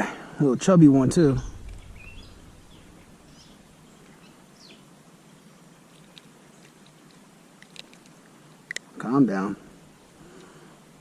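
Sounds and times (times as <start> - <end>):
low steady background hiss: 0.0 - 11.0
bird chirps: 1.2 - 6.7.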